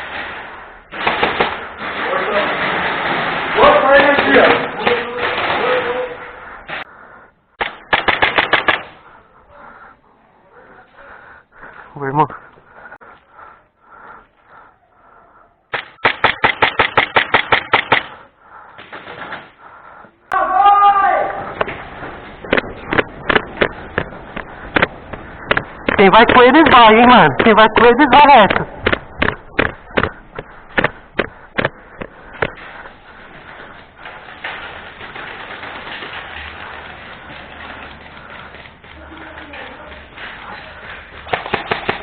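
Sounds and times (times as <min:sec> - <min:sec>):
airsoft gun shots: 0:07.6 - 0:09.0, 0:15.7 - 0:18.2, 0:41.3 - 0:42.0
faint rustling: 0:28.3 - 0:41.4
sharp knocks: 0:28.5 - 0:32.6.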